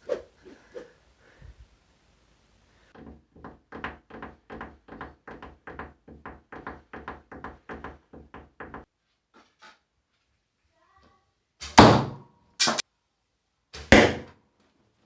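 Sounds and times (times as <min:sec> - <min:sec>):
knocks: 0:03.0 - 0:08.9.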